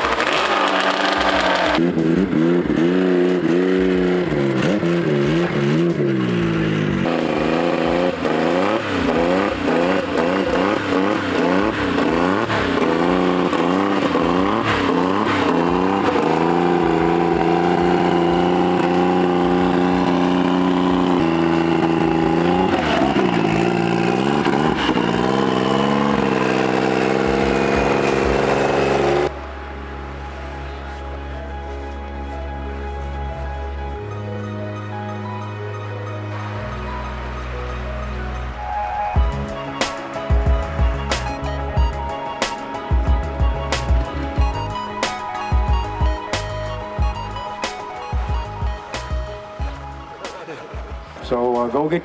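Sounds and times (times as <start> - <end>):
snowmobile engines revving: 0.0 - 29.4.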